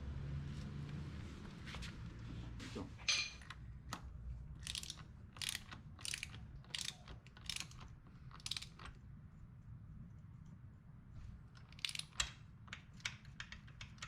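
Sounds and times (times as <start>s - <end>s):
ratchet wrench clicking: 4.6s - 8.9s, 11.6s - 14.0s.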